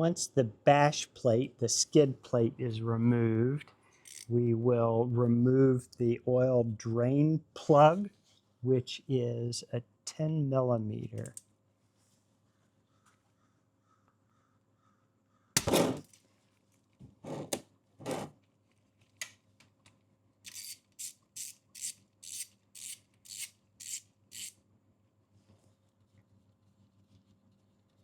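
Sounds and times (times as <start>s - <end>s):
ratchet rasping strokes: 4.0s - 4.3s, 20.5s - 24.5s
knock and scrape: 15.6s - 16.0s.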